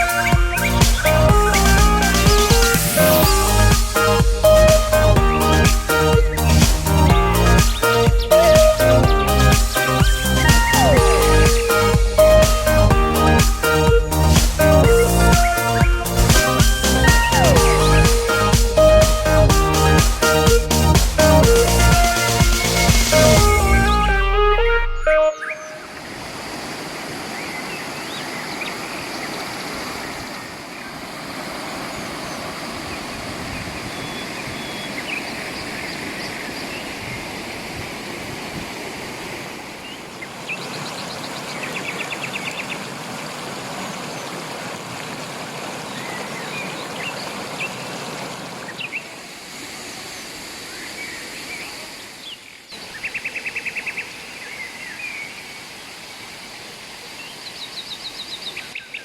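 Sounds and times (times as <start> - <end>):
birds chirping: 0.0 - 26.1, 27.2 - 31.1, 31.7 - 37.5, 39.8 - 43.0
river rushing over rocks: 25.4 - 52.2.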